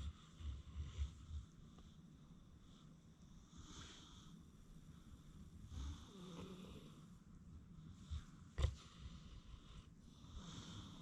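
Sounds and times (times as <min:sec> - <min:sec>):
pigs snoring: 0:05.7 - 0:07.0, 0:08.2 - 0:11.0.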